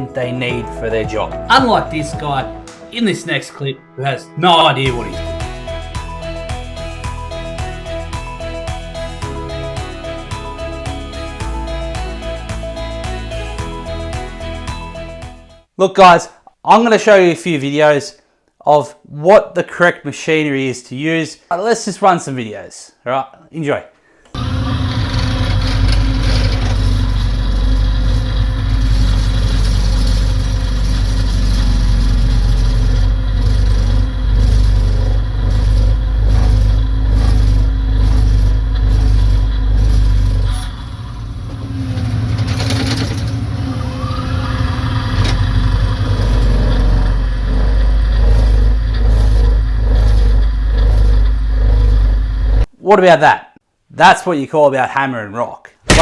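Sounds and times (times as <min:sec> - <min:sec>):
diesel engine under load: 0:24.4 - 0:52.7
regular knocks and scrapes: 0:25.2 - 0:40.9, 0:41.5 - 0:43.9, 0:44.9 - 0:52.7.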